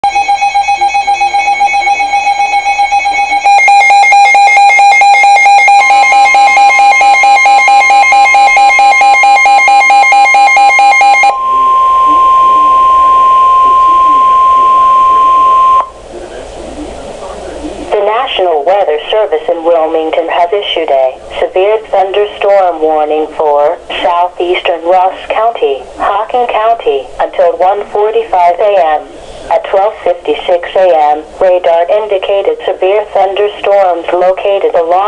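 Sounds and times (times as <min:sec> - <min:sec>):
pulsing alarm beeps: 0:00.0 - 0:16.0
steady warning alarm tone: 0:00.0 - 0:16.0.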